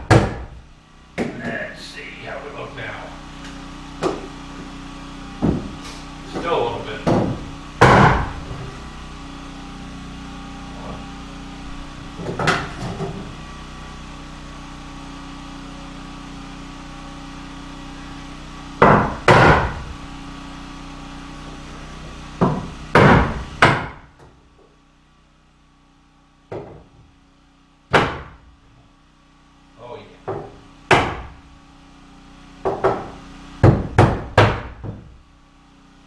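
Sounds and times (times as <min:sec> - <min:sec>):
hammer knocking on wood: 0:00.0 - 0:00.6, 0:01.2 - 0:01.6, 0:04.0 - 0:04.4, 0:05.4 - 0:08.7, 0:18.8 - 0:20.0, 0:22.4 - 0:24.4, 0:26.5 - 0:27.1, 0:27.9 - 0:28.4, 0:30.2 - 0:31.4, 0:32.6 - 0:35.2
generator humming: 0:00.0 - 0:36.0.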